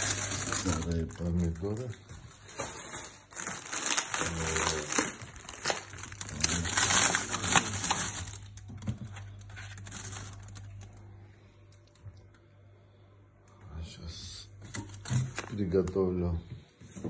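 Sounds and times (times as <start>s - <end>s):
plastic packaging crinkling: 0.0s - 11.1s, 14.6s - 16.2s
steady low hum: 4.0s - 17.0s.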